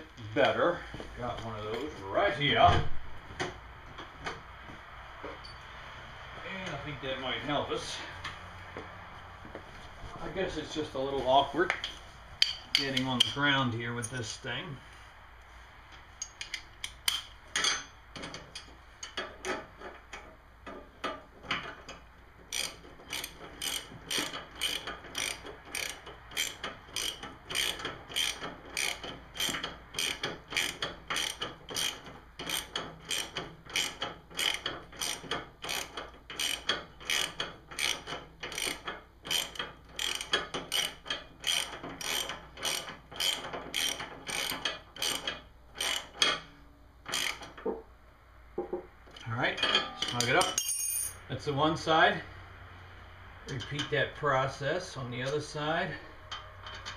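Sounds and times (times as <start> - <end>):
socket ratchet clicking: 22.5 - 46.4, 47.1 - 47.5.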